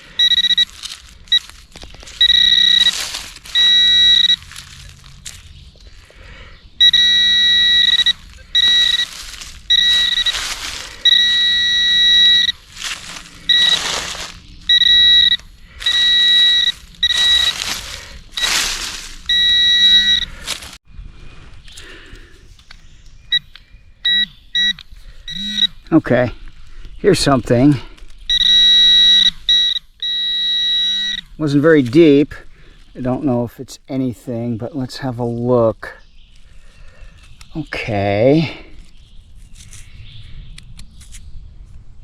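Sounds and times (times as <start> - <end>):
metal detector high-pitched beeps: 0.0 - 4.5, 6.8 - 20.4, 23.3 - 25.8, 28.3 - 32.2
digging scrapes in soil: 0.0 - 6.2, 8.1 - 11.6, 12.5 - 20.8.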